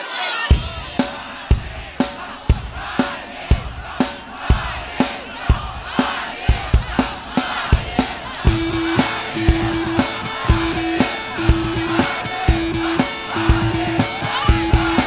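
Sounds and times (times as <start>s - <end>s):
kick drum beating: 7.8s - 15.0s
rock guitars: 8.4s - 15.0s.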